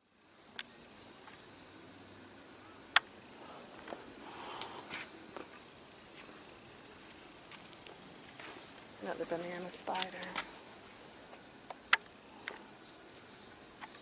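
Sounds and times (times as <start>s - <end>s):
insects buzzing: 0.0s - 14.0s
soft footsteps on a trail: 3.4s - 13.9s.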